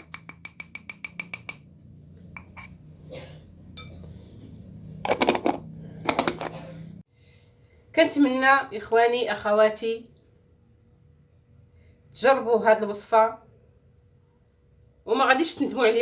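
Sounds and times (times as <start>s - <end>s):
kitchenware clinking: 2.4s - 2.9s, 3.7s - 4.1s.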